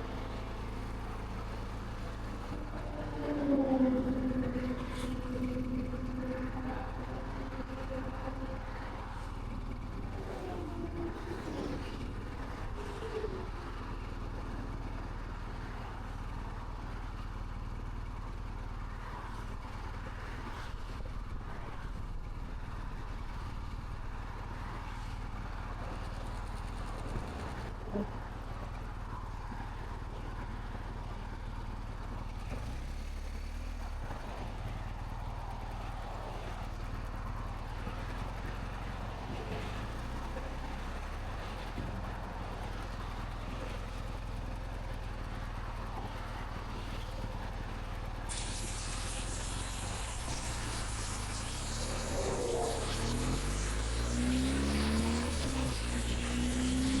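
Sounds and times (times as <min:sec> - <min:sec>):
motorcycle engine drone: 0:00.0 - 0:57.0
wind rushing hiss: 0:48.3 - 0:57.0.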